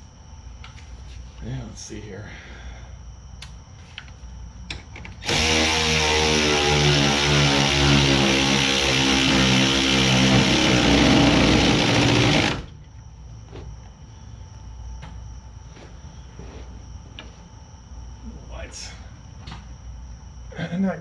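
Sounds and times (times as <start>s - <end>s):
handheld power tool running: 5.2s - 12.7s.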